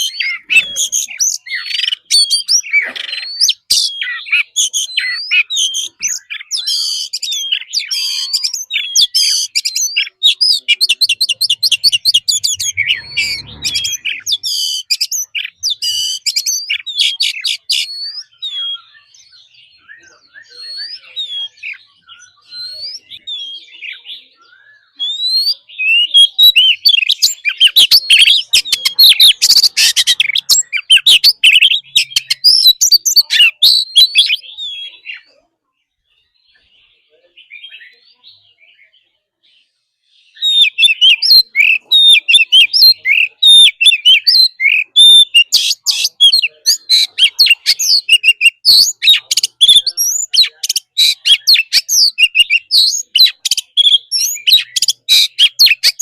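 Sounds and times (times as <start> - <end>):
bird harsh chattering: 0.0 - 18.8, 25.0 - 35.3, 40.4 - 56.0
bird singing whistled notes: 0.0 - 35.4, 36.0 - 56.0.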